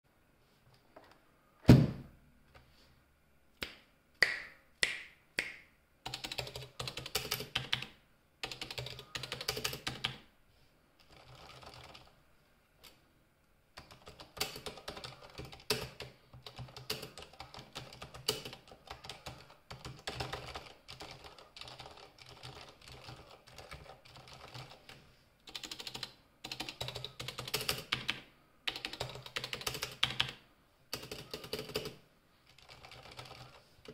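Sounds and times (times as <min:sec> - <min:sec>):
loud thump: 0:01.7 - 0:02.1
mechanical keyboard typing: 0:06.1 - 0:10.2, 0:11.0 - 0:12.1, 0:13.8 - 0:33.9.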